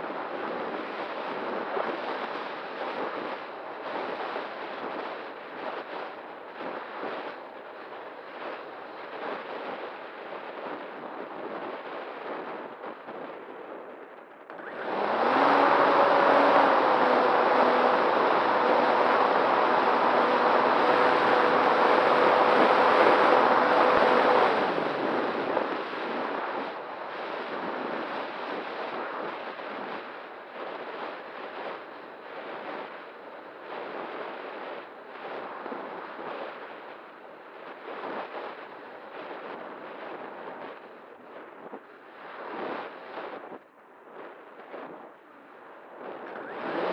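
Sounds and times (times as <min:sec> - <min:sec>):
wind rushing over glider: 0:00.0 - 0:46.9
electric motor and propeller whine: 0:14.5 - 0:28.4, 0:46.1 - 0:46.9.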